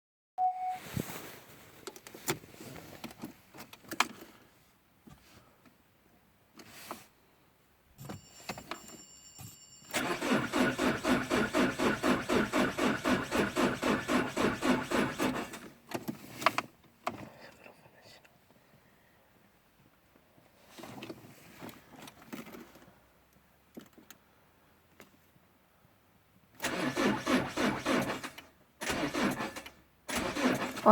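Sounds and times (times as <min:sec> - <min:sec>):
starter motor cranking engine: 0:09.9 - 0:15.7, 0:26.6 - 0:30.9.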